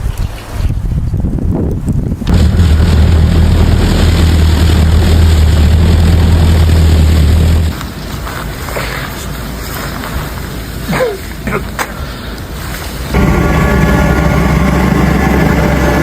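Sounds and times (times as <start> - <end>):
heavy engine droning: 2.3 - 7.8, 13.1 - 16.0.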